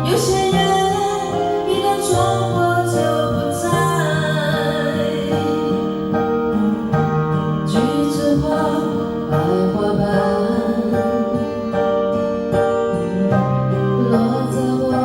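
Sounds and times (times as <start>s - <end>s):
karaoke backing track: 0.0s - 15.0s
person singing karaoke: 0.0s - 15.0s.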